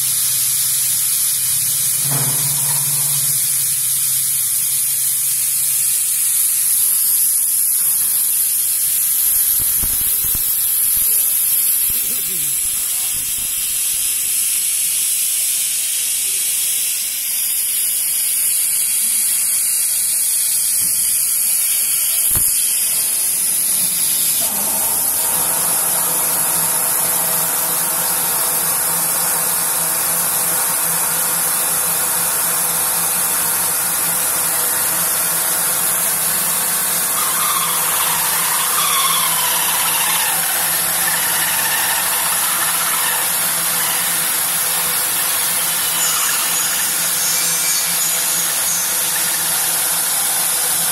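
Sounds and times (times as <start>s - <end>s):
router spindle high-pitched hiss: 0.0s - 50.9s
low machine hum: 1.4s - 4.7s, 22.9s - 50.9s.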